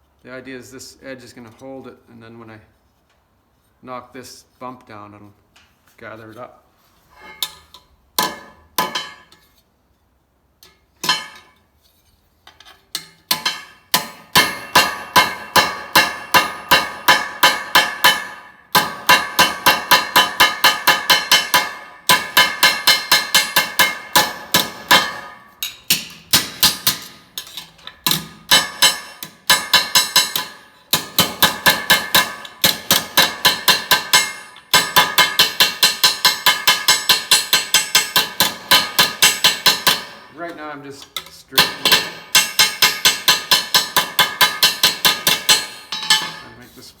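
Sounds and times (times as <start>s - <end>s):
hammer ringing on sheet steel: 13.3s - 27.1s, 28.1s - 40.3s, 41.6s - 46.6s.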